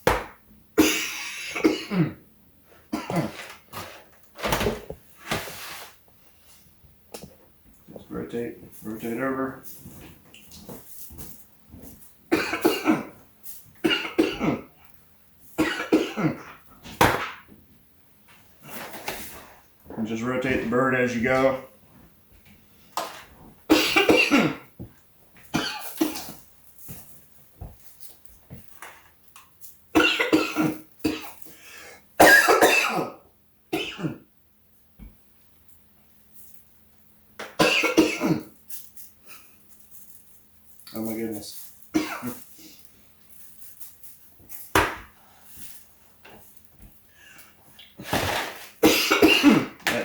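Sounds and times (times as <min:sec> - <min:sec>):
person coughing hard: 0:00.8 - 0:02.2, 0:02.9 - 0:03.5, 0:12.3 - 0:13.2, 0:13.8 - 0:14.8, 0:15.6 - 0:16.6, 0:23.7 - 0:24.7, 0:25.5 - 0:26.4, 0:30.0 - 0:31.4, 0:32.2 - 0:34.3, 0:37.6 - 0:38.5, 0:41.9 - 0:42.4, 0:48.8 - 0:49.8.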